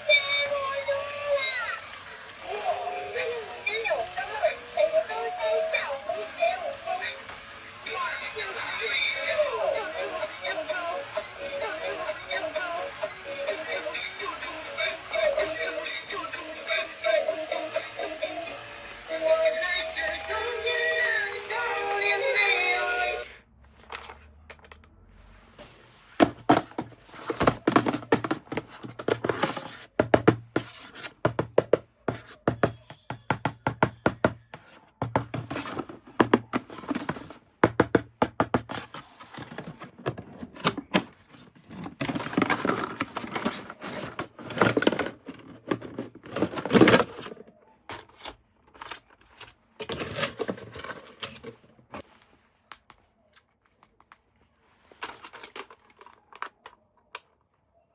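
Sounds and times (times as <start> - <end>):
packaging rustling: 38.6 - 52.3.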